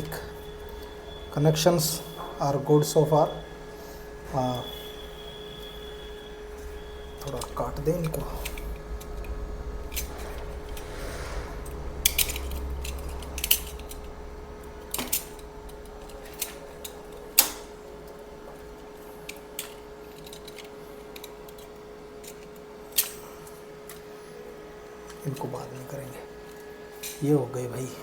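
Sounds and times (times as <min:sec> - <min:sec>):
faint steady hum: 0:00.0 - 0:28.0
hand tools clicking and clinking: 0:06.7 - 0:10.8, 0:14.8 - 0:17.8, 0:18.5 - 0:24.1.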